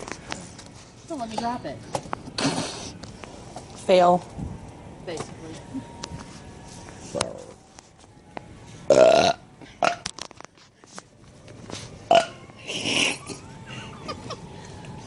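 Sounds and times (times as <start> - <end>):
person belching: 8.9 - 10.0, 12.1 - 13.2.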